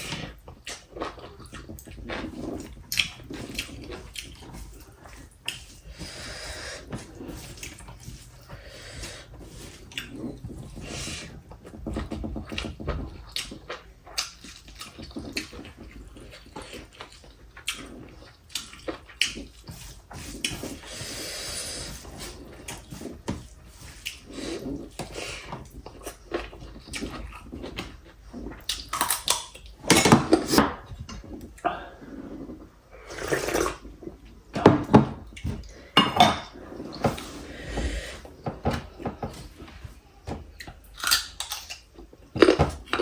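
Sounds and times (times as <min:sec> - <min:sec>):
slurping soup: 0:00.0 - 0:28.9, 0:29.8 - 0:34.5, 0:35.3 - 0:39.9
wet chewing: 0:00.1 - 0:29.8.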